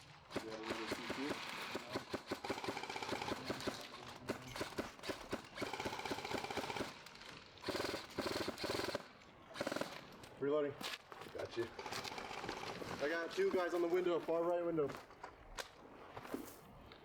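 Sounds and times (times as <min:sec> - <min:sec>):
airsoft rifle shots: 0:00.3 - 0:07.0, 0:07.6 - 0:10.0.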